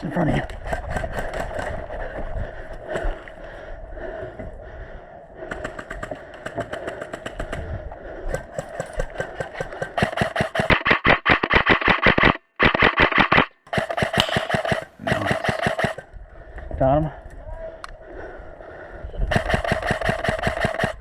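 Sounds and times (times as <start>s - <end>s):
faint rapid gunfire clicking: 8.3s - 16.1s, 19.3s - 21.0s
airsoft rifle firing: 9.0s - 16.1s, 19.3s - 21.0s.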